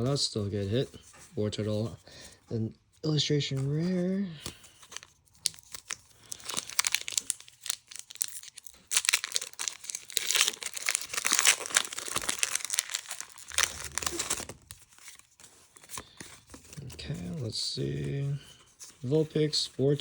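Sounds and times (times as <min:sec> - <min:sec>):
plastic packaging crinkling: 0:04.4 - 0:19.3.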